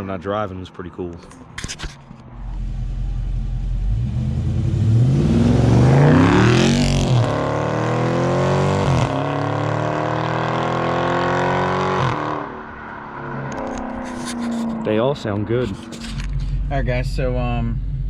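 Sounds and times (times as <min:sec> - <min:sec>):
car engine accelerating hard: 0:02.4 - 0:18.0.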